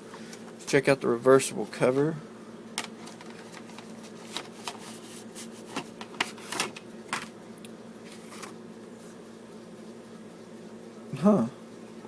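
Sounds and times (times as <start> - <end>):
paper rustling against plastic case: 2.8 - 7.3, 8.0 - 8.6.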